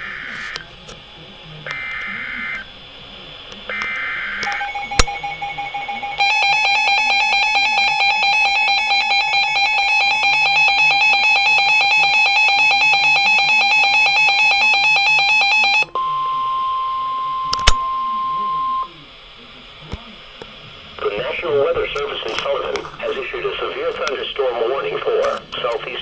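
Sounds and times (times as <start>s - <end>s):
pulsing beeping alarm: 1.7s - 2.8s, 3.7s - 19.0s.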